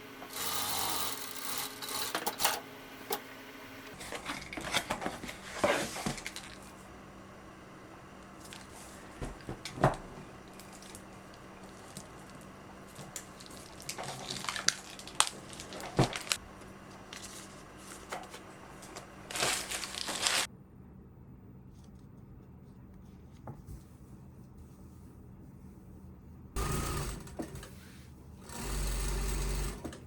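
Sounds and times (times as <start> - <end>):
rustle of crumpling: 10.4 - 20.5.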